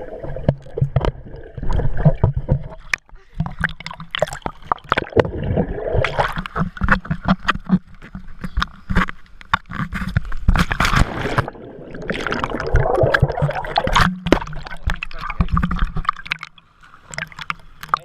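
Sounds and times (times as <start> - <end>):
water splashing and sloshing: 0.0 - 18.0
rushing water: 10.8 - 18.0.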